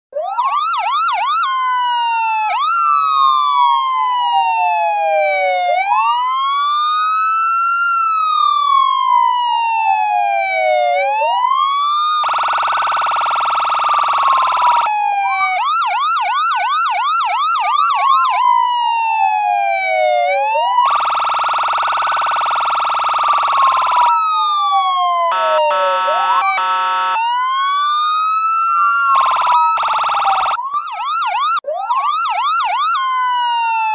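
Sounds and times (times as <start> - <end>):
police siren: 0.1 - 33.9
harsh buzzing horn tone: 25.3 - 27.2.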